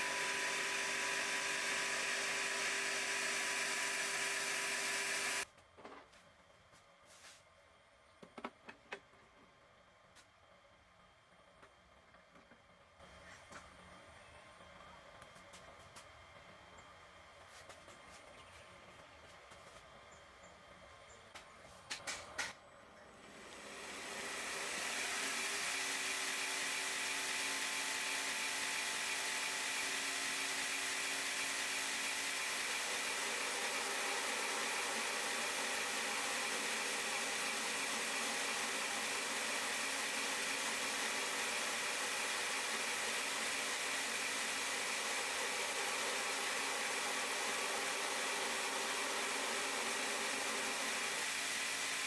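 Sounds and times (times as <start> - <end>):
belt grinder running: 0.0 - 5.5, 23.3 - 52.0.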